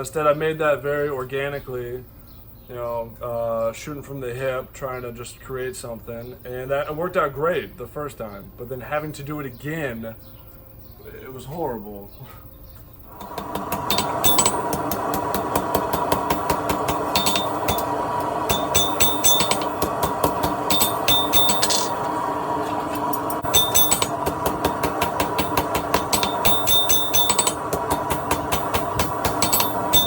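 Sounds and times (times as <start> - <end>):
steady whirring noise: 13.0 - 30.0
hammer striking steel on anvil: 13.2 - 22.2, 23.0 - 30.0.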